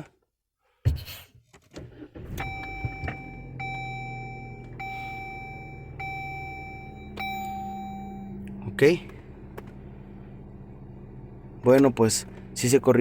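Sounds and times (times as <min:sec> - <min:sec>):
car engine starting and idling: 0:01.8 - 0:13.0
dashboard warning chime: 0:02.3 - 0:08.8.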